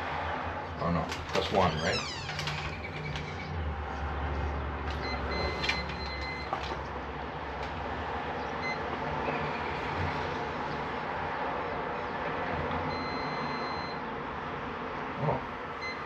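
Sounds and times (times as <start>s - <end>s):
door lock beeping: 4.9s - 6.5s, 12.9s - 14.0s.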